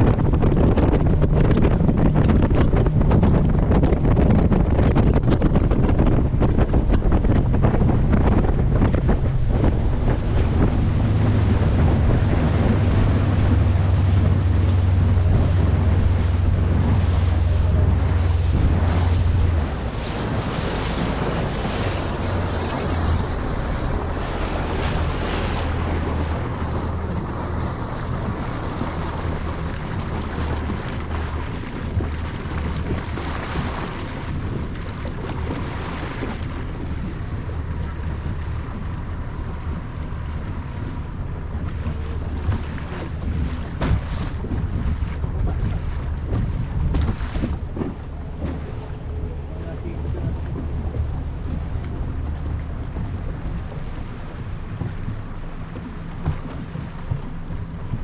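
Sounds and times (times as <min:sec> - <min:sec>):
boat engine drone: 0:00.0 - 0:58.0
rushing water: 0:00.0 - 0:58.0
wind buffeting microphone: 0:00.0 - 0:58.0.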